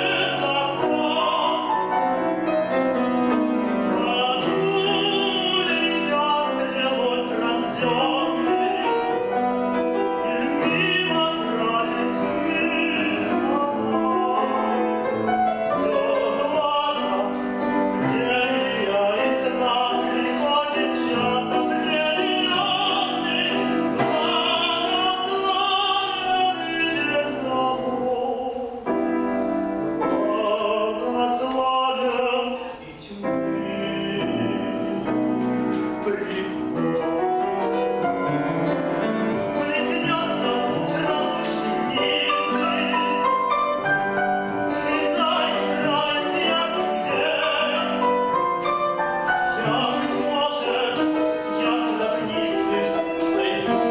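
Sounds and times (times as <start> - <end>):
man singing operatically: 0.0 - 29.0, 29.9 - 53.9
piano accompaniment: 0.0 - 53.9.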